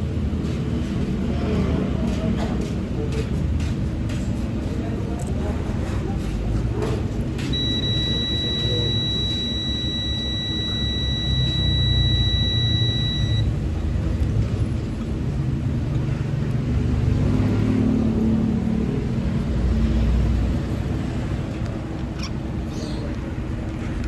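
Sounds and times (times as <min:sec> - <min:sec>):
high electronic beep: 0:07.5 - 0:13.5.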